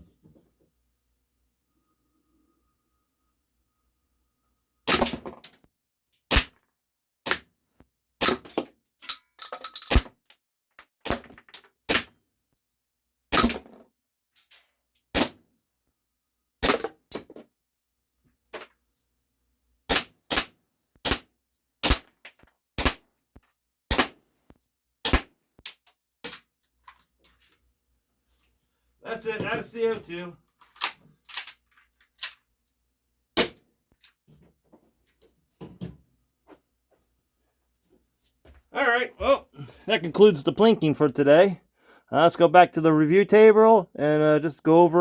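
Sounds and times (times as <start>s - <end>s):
airsoft pistol shots: 19.9s - 20.5s, 23.9s - 24.2s.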